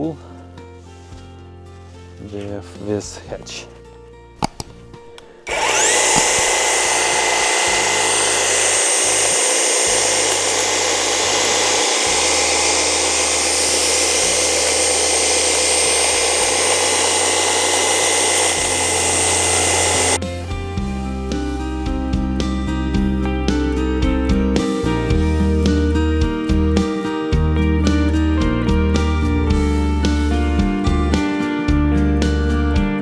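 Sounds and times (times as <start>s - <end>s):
hedge trimmer motor whine: 4.5s - 20.2s
reciprocating blades clattering: 5.5s - 20.2s.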